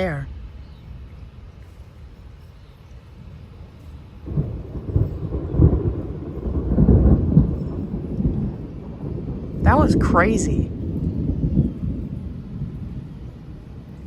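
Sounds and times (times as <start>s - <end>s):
light rain hissing: 0.0s - 14.0s
thunder rumbling: 3.2s - 14.0s.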